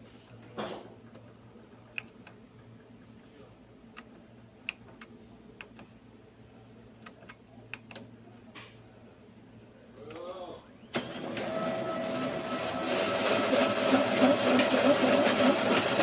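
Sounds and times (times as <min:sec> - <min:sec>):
steady low hum: 0:00.0 - 0:10.9.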